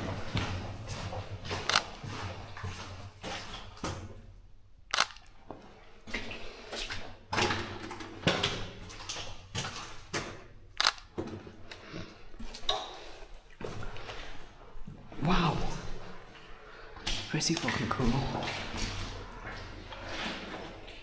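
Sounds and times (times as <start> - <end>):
footsteps on gritty floor: 0.0 - 4.0.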